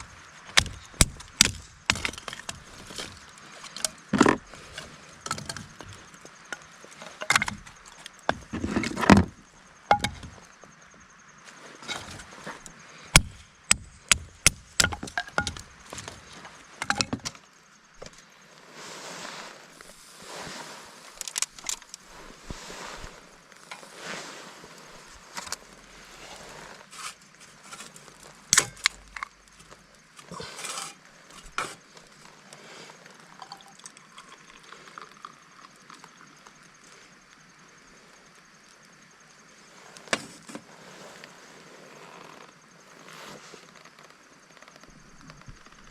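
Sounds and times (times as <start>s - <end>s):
rustling: 14.8s - 33.6s, 39.4s - 45.9s.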